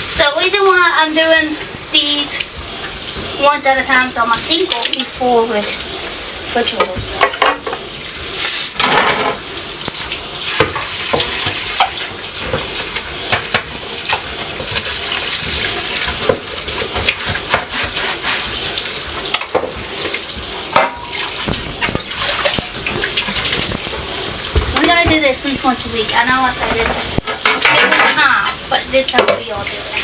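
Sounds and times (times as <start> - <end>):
faucet running into sink: 0.0 - 30.0
small knocks and clatters: 6.7 - 7.9, 19.2 - 25.4, 26.6 - 28.3.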